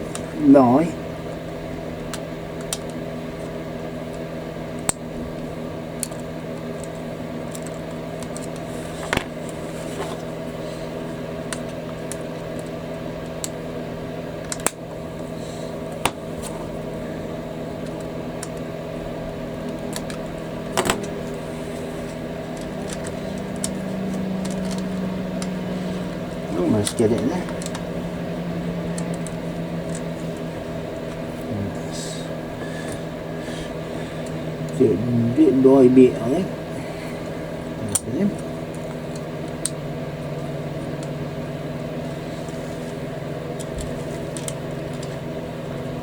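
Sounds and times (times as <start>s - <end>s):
electrical hum: 0.0s - 46.0s.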